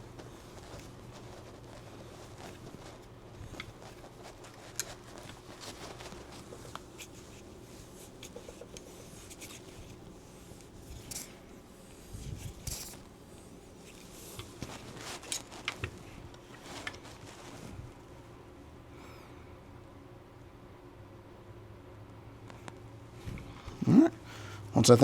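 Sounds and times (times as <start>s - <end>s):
faint steady hum: 0.0s - 25.0s
metallic clicks and scrapes: 3.5s - 11.4s, 12.2s - 13.1s.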